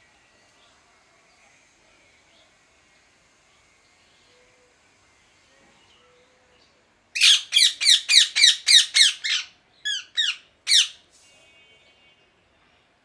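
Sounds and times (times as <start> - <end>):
parakeet squawking: 7.2 - 11.0.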